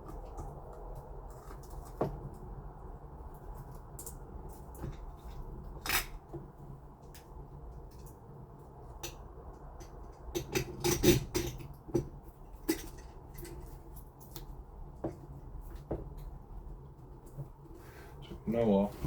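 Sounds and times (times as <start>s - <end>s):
lock parts and tools clinking: 10.4s - 11.7s.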